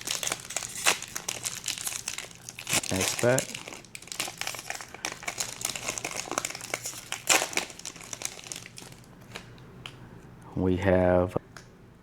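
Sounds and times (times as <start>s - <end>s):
foil wrapper crinkling: 0.0s - 9.5s.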